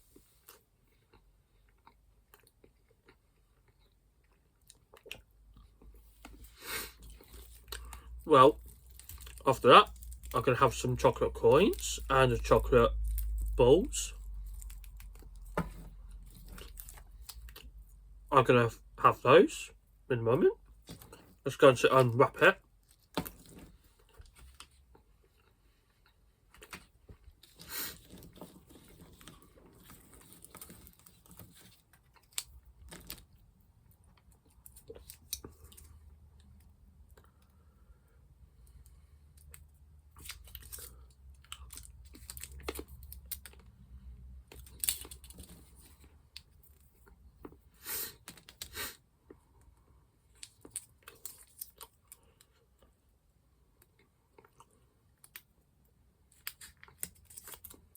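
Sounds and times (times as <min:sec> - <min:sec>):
chocolate being chewed: 0:00.2 - 0:18.1, 0:22.8 - 0:37.7, 0:38.6 - 0:53.1, 0:53.7 - 0:55.6, 0:56.2 - 0:57.9
wrappers tearing and crinkling: 0:08.6 - 0:10.5, 0:27.5 - 0:33.3, 0:40.2 - 0:43.6, 0:44.5 - 0:45.8, 0:56.4 - 0:57.9.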